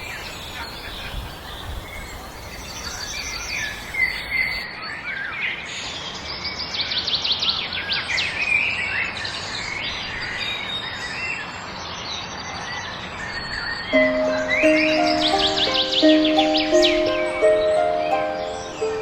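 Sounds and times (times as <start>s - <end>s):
steady background hiss: 14.0s - 19.0s.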